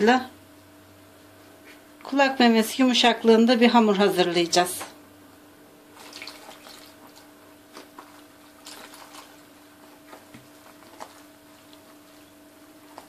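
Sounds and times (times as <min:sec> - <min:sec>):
steady low hum: 0:00.0 - 0:13.0
dough squelching and tapping: 0:06.9 - 0:13.0.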